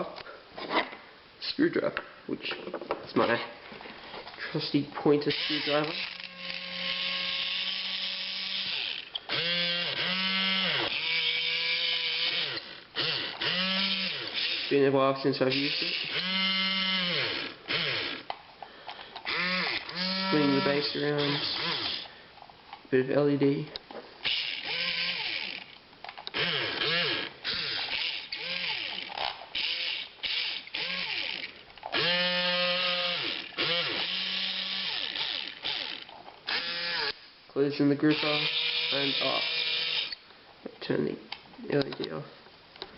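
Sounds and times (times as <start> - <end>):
small gear motors whining: 5.3 - 14.7, 15.5 - 18.3, 19.2 - 22.1, 24.2 - 37.2, 38.1 - 40.2.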